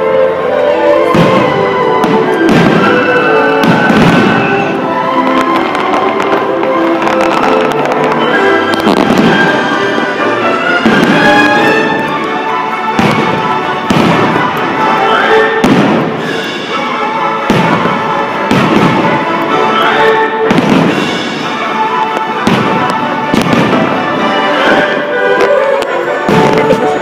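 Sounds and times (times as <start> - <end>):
loud show music: 0.0 - 27.0
fireworks bursting: 0.6 - 27.0.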